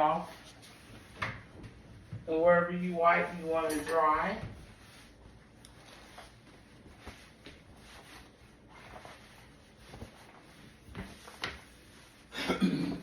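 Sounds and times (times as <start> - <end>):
person speaking: 2.2 - 4.6.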